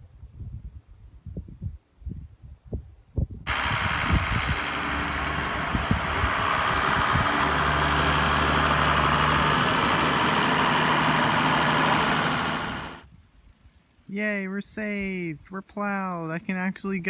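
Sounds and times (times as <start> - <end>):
tractor engine running: 3.5 - 13.0.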